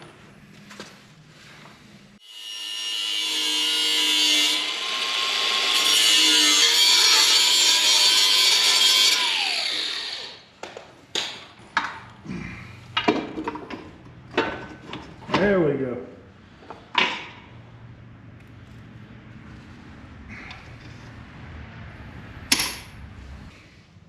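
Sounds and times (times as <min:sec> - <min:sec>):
grinder whining: 0:03.3 - 0:10.5.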